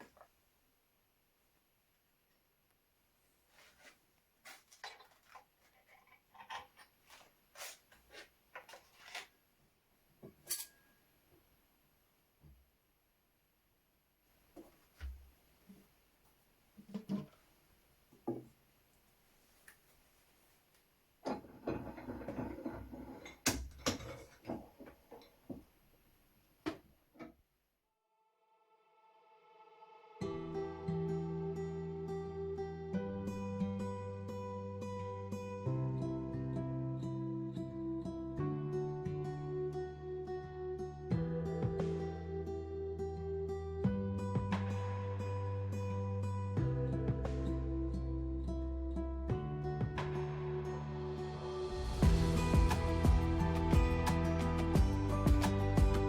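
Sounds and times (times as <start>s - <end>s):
tool handling clicks and knocks: 21.3s - 25.4s.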